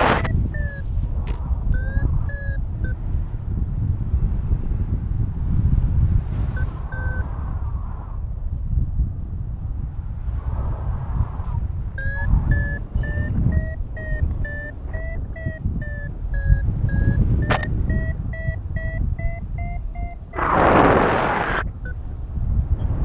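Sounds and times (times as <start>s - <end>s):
variometer beeping: 0.0s - 3.5s, 6.5s - 7.3s, 12.0s - 23.0s
wind rumble on microphone: 0.0s - 23.0s.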